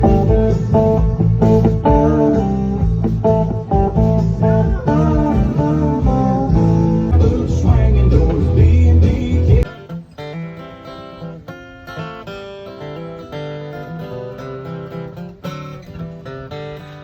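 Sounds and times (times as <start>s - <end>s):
low bass: 0.0s - 9.7s
plucked blues guitar: 0.0s - 17.0s.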